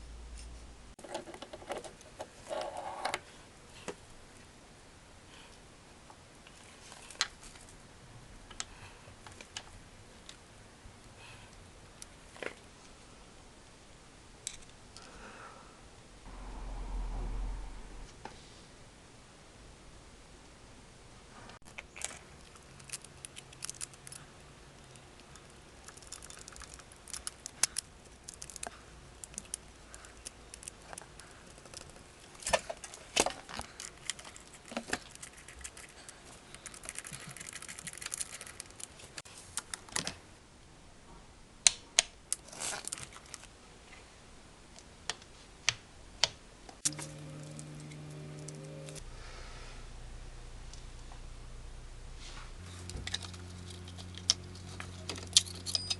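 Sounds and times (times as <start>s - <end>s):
short steady hum: 16.2s - 18.7s, 46.8s - 54.7s
metal tools clicking and clinking: 55.0s - 55.9s.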